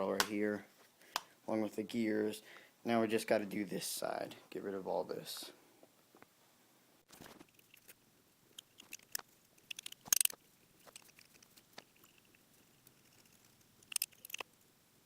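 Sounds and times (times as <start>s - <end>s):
handling clicks and crackling: 7.2s - 14.6s.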